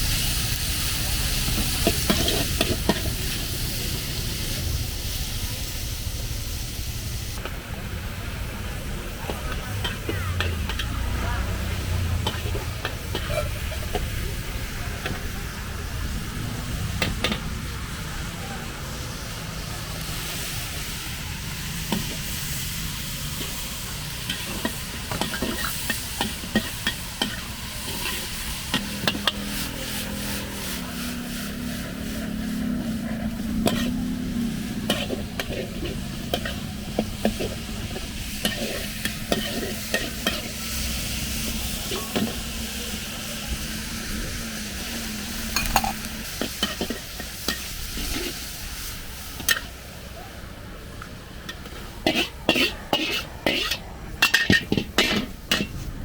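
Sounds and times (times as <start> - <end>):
food sizzling in a wok: 0.0 - 56.0
metal spatula scraping a pan: 12.2 - 14.0, 33.6 - 40.6, 52.0 - 55.8.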